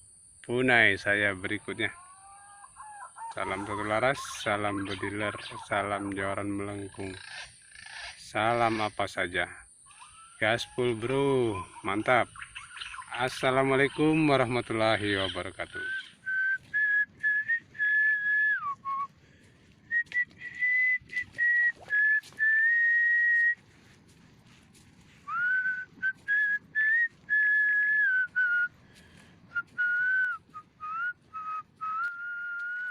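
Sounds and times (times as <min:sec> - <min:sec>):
pigeon whistled call: 0:15.2 - 0:19.1, 0:20.0 - 0:23.6, 0:29.6 - 0:32.9.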